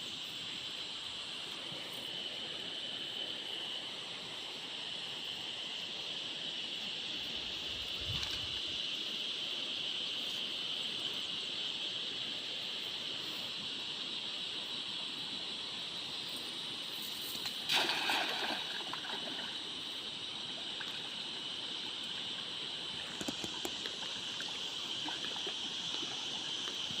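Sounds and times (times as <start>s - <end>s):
steady high hiss: 0.0s - 27.0s
water splashing: 17.4s - 19.6s.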